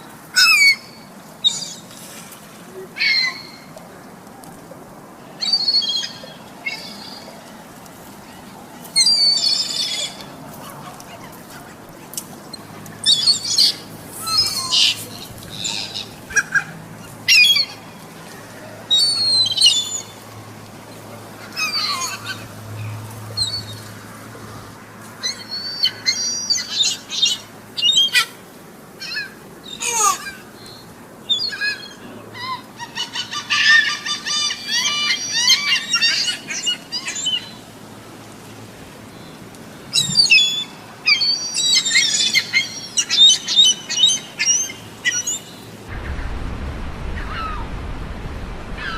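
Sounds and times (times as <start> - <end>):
seagulls calling: 31.3 - 37.6.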